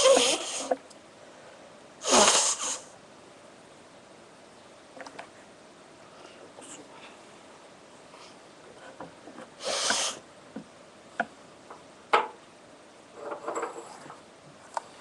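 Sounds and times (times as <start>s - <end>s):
woman sniffing: 2.0s - 2.9s, 9.6s - 10.2s.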